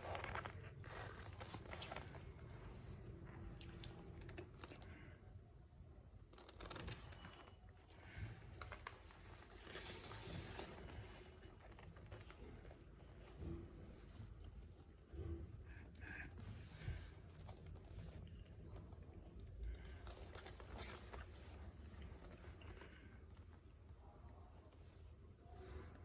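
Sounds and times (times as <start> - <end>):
soft handling noise: 0.0 - 15.6.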